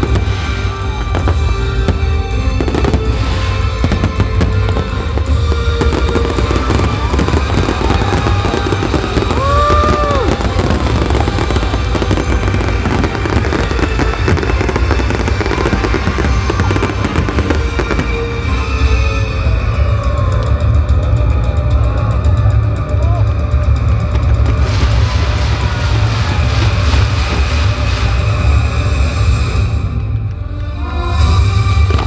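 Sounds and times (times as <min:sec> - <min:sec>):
fireworks bangs and crackles: 0:00.0 - 0:30.2, 0:31.2 - 0:32.0
music playing: 0:00.0 - 0:32.0.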